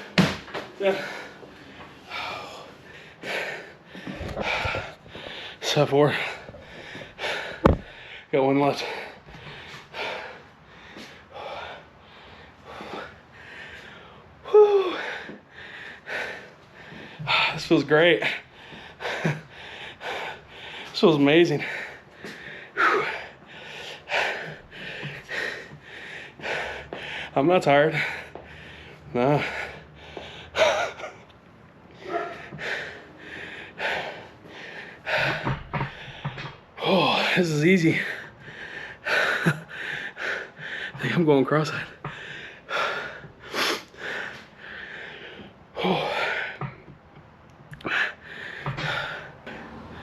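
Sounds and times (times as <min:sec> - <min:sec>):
man breathing hard: 0:00.0 - 0:47.0, 0:47.6 - 0:50.0.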